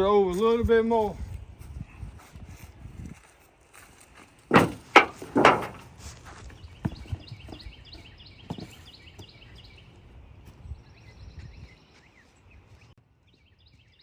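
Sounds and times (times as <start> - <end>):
heavy wooden thumps: 4.5 - 6.0
bird chirping: 6.4 - 14.0.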